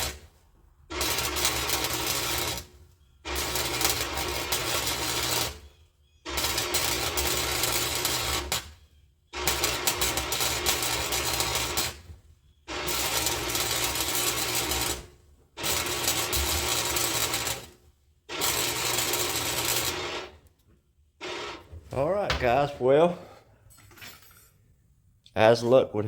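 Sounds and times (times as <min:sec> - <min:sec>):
welder arc crackling and buzzing: 0:00.0 - 0:05.7, 0:06.3 - 0:08.8, 0:09.4 - 0:20.6, 0:21.2 - 0:21.8.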